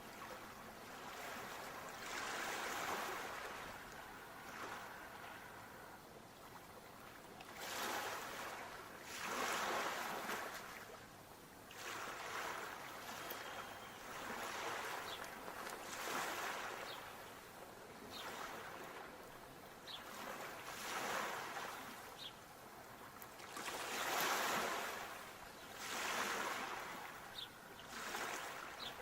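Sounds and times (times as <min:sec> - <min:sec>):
sea waves washing in: 0:00.0 - 0:06.0, 0:23.4 - 0:29.0.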